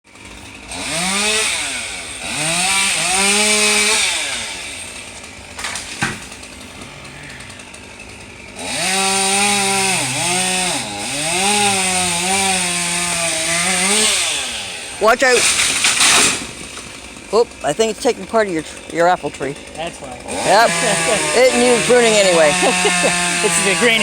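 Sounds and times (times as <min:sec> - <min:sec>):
chainsaw revving while cutting: 0:00.1 - 0:24.0
sharp crack: 0:02.8 - 0:09.2, 0:13.8 - 0:17.3.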